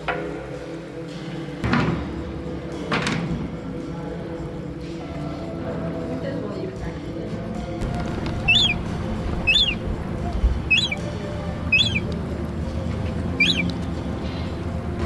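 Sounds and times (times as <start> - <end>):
bird calling: 7.8 - 15.0
low background rumble: 7.8 - 15.0.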